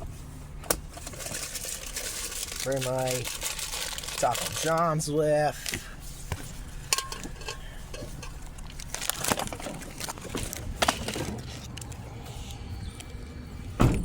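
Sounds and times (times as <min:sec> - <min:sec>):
steady low hum: 0:00.0 - 0:14.0
crinkling: 0:00.9 - 0:13.2
handling clicks and knocks: 0:05.6 - 0:12.0.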